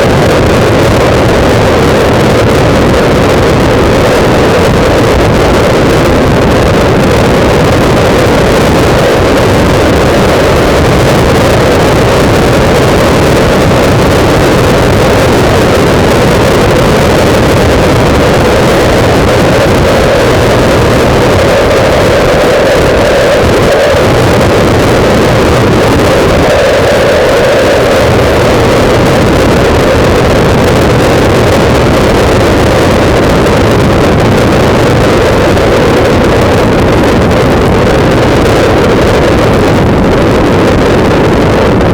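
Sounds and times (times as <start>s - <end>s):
road noise: 0.0s - 30.8s
wind buffeting microphone: 0.0s - 41.9s.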